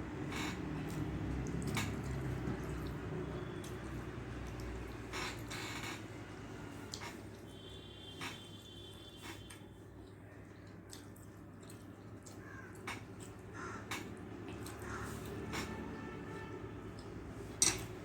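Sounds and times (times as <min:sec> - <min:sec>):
eating by hand clicks and smacks: 0:00.2 - 0:06.0, 0:06.8 - 0:07.5, 0:09.2 - 0:16.0, 0:16.8 - 0:18.0.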